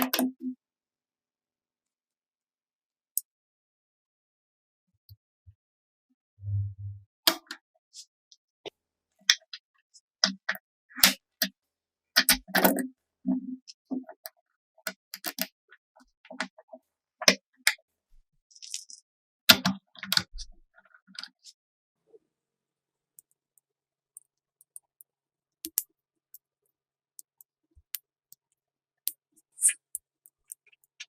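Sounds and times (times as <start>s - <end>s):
small parts clicking and tapping: 18.5s - 21.5s, 23.2s - 31.0s.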